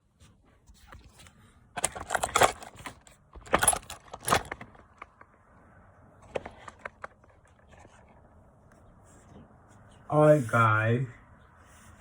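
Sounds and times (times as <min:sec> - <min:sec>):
metallic jingling and rattling: 0:01.8 - 0:04.8.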